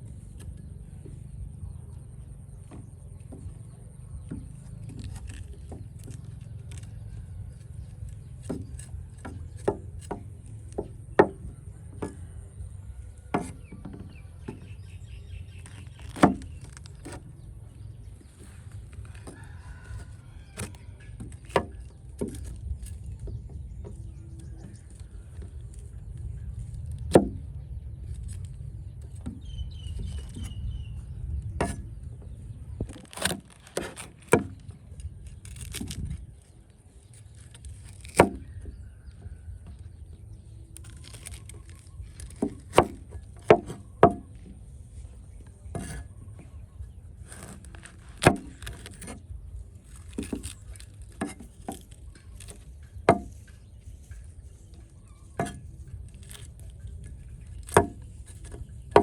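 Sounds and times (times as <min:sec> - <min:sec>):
low steady rumble: 0:00.0 - 0:59.0
chopping on wooden board: 0:08.4 - 0:12.2, 0:13.3 - 0:14.8, 0:27.0 - 0:27.4, 0:42.3 - 0:44.5, 0:48.2 - 0:49.2, 0:57.7 - 0:59.0.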